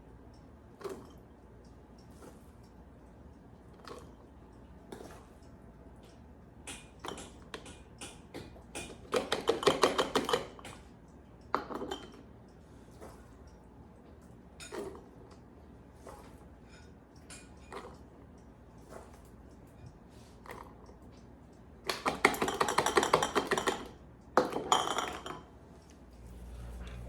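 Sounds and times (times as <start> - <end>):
kitchenware clinking and clattering: 6.7 - 10.9, 11.6 - 12.3, 14.6 - 15.2, 16.0 - 18.1, 21.9 - 25.5.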